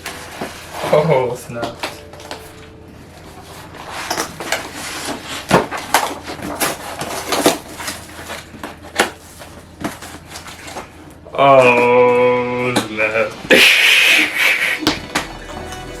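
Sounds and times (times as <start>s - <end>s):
packaging rustling and scraping: 0.0s - 11.2s.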